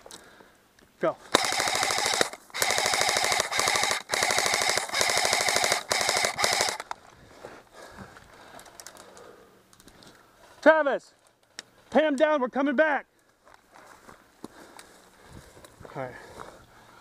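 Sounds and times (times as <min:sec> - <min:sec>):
airsoft rifle firing bursts: 0:01.3 - 0:06.9.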